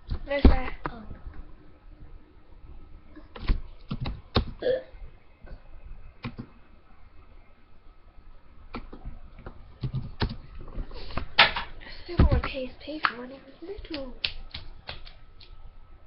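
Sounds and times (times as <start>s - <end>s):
person hiccup or burp: 4.6s - 5.0s.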